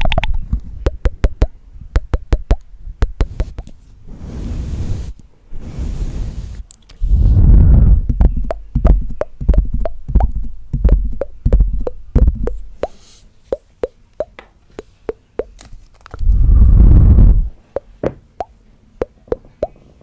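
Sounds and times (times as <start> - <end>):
tongue clicks: 8.4 - 15.6.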